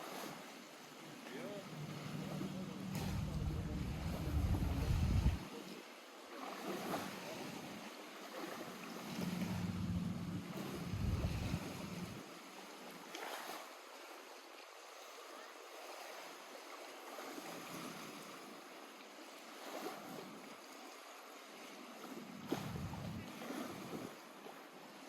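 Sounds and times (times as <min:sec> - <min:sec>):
water lapping at shore: 0:00.0 - 0:25.0
low rumble: 0:01.7 - 0:05.4, 0:09.2 - 0:12.2, 0:22.6 - 0:23.2.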